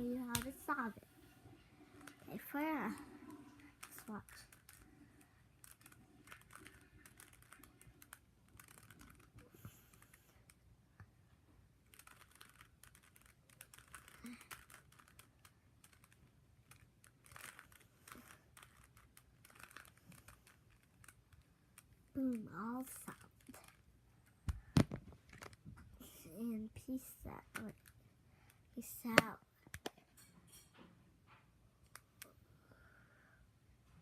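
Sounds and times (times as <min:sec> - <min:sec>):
puzzle cube plastic clicks: 0:01.9 - 0:10.7, 0:11.8 - 0:25.7, 0:27.0 - 0:30.0.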